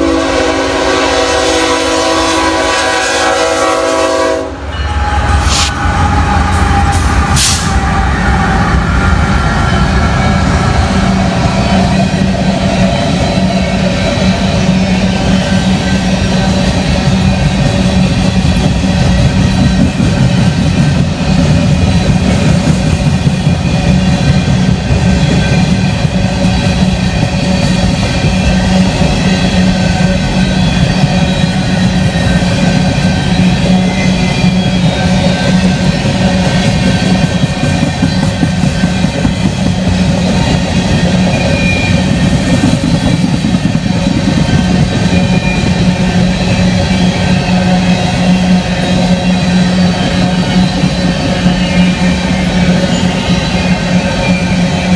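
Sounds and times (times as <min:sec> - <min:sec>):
train horn: 0:00.0 - 0:10.6, 0:45.2 - 0:54.9
freight train rumbling past: 0:00.0 - 0:54.9.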